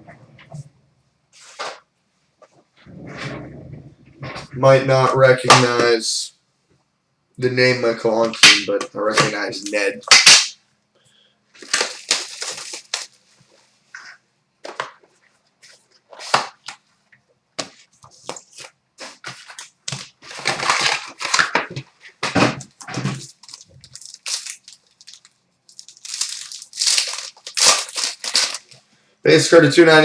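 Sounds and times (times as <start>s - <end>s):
packaging tearing and crinkling: 11.6s - 13.2s, 18.5s - 21.9s, 23.1s - 28.8s.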